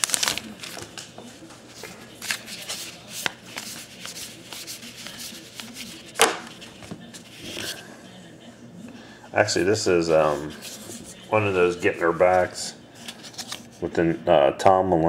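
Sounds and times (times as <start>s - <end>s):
cards sliding and rubbing: 1.8s - 7.8s, 9.6s - 13.8s
card snap: 6.2s - 6.6s.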